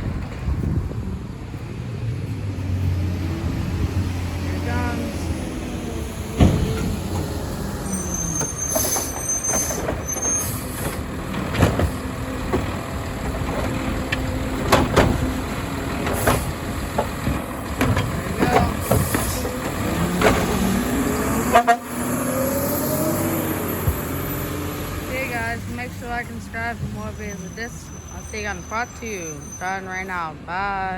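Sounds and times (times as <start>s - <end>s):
garbage truck engine running: 0.0s - 28.2s
high squeal: 7.8s - 11.0s, 22.0s - 24.8s, 27.1s - 30.1s
metallic clanks and knocks: 10.8s - 20.8s.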